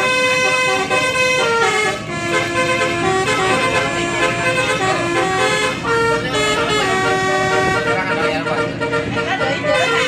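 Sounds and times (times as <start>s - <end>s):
bus musical horn playing a tune: 0.0s - 10.0s.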